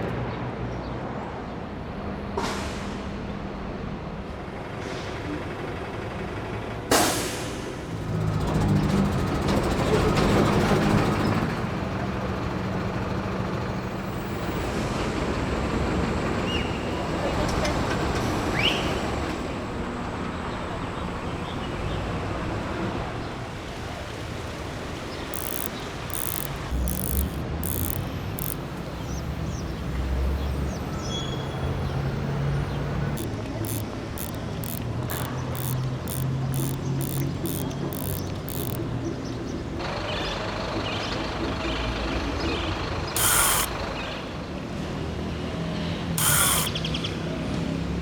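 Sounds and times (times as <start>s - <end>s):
faint short squeaks: 25.4s - 29.1s, 33.1s - 38.8s, 43.2s - 43.7s, 46.2s - 46.8s.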